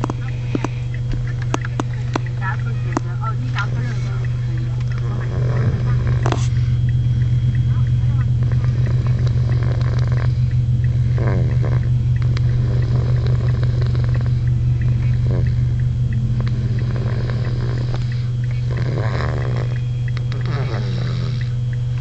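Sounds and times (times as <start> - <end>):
loud steady low hum: 0.0 - 22.0
person snoring: 5.1 - 6.6, 8.6 - 11.9, 12.5 - 15.7, 16.5 - 19.8, 20.4 - 21.6.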